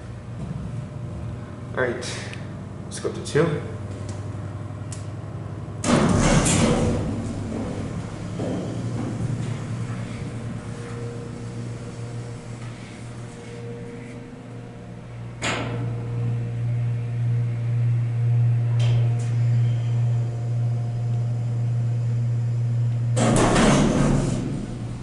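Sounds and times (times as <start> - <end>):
elevator pump motor humming: 0.0 - 25.0.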